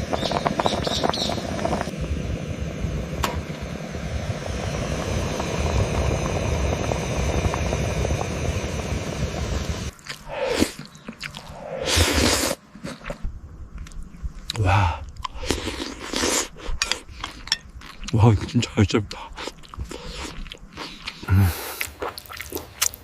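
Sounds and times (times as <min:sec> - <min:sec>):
dense steady noise: 0:00.0 - 0:10.4
chewing and crunching food: 0:09.9 - 0:23.0.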